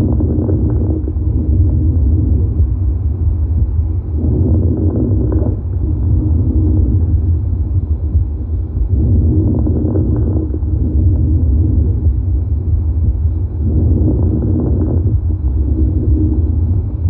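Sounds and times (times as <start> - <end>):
constant low rumble: 0.0 - 17.0.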